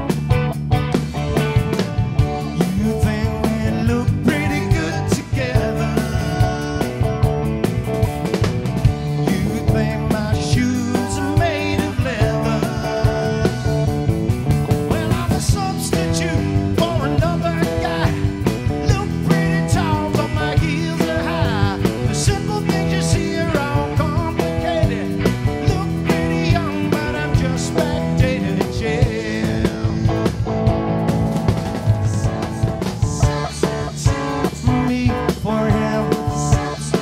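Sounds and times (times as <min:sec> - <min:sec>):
rock band playing: 0:00.0 - 0:37.0.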